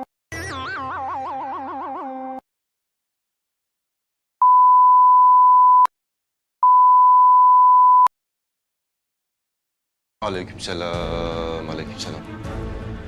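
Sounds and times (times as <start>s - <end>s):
high-pitched censor beep: 4.4s - 5.9s, 6.6s - 8.1s.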